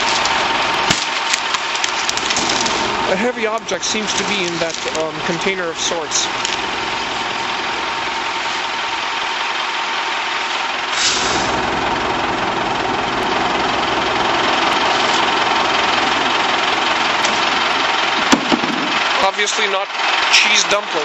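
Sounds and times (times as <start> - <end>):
machinery engine running: 0.0 - 21.0
brief hiss: 11.0 - 11.5.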